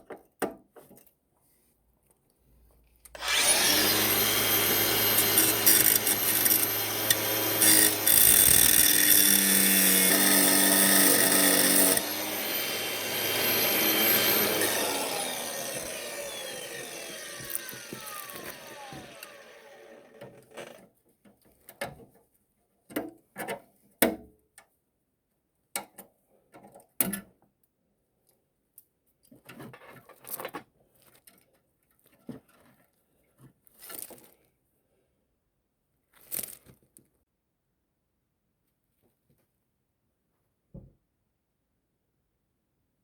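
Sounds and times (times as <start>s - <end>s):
power tool winding down: 3.2s - 20.5s.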